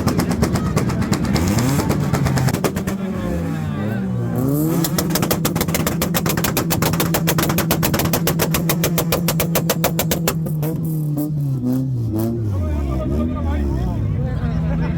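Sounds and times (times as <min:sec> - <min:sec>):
rapid exhaust pops: 0:00.0 - 0:03.2, 0:04.6 - 0:12.5
car engine at high revs: 0:00.0 - 0:14.9.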